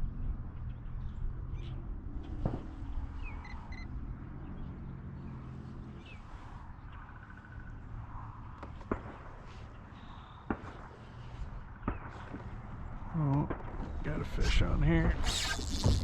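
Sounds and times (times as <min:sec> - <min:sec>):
birds chirping: 0:00.5 - 0:16.0.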